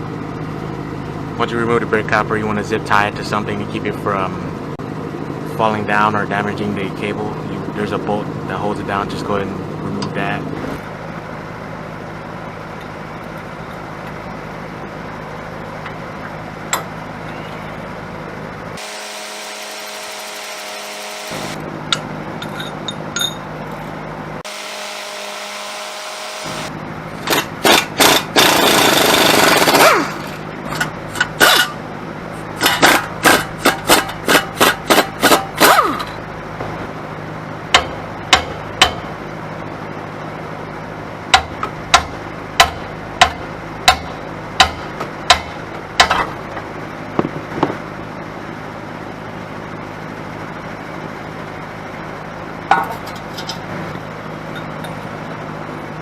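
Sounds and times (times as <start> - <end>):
impact wrench loosening bolts: 27.2 - 31.7.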